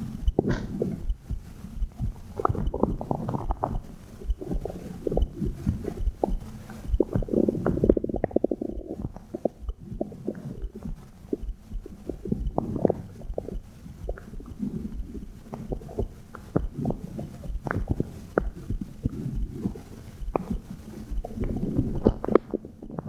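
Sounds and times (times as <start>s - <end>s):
heartbeat thumps: 0.0s - 23.0s
stomach gurgling: 0.0s - 23.0s.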